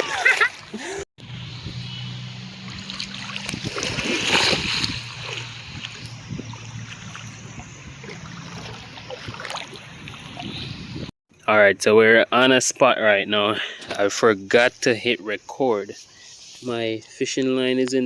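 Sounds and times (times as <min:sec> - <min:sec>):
water splashing in a river: 0:02.6 - 0:10.6.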